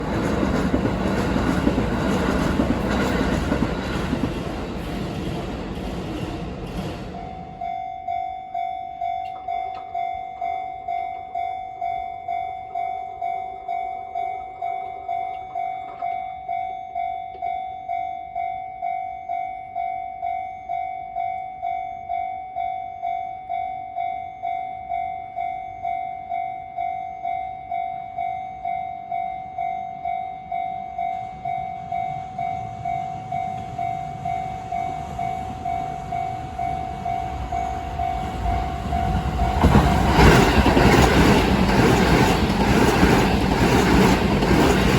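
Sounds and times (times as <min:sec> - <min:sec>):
approaching train: 0:00.0 - 0:16.7, 0:23.4 - 0:44.9
passing train: 0:00.0 - 0:44.9
level crossing warning bell: 0:07.1 - 0:44.9.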